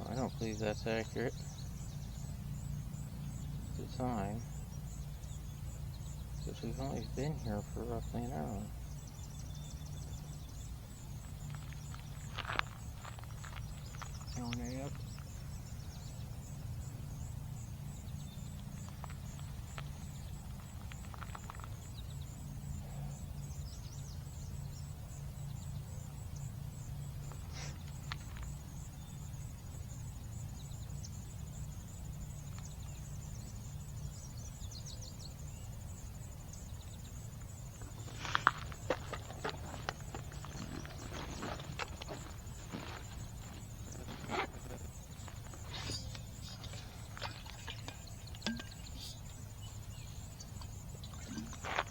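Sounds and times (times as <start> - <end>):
footsteps on a trail: 11.1 - 15.4, 37.8 - 48.6, 50.8 - 51.9.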